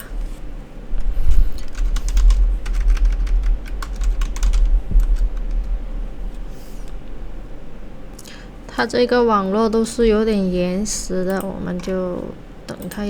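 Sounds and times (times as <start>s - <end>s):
low rumble: 0.4s - 8.2s.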